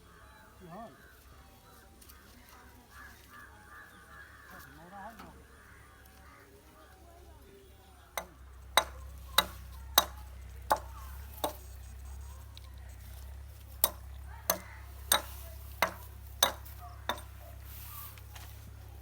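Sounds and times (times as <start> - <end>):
steady low hum: 7.9 - 19.0
sharp knocks: 8.2 - 11.6, 13.8 - 17.4.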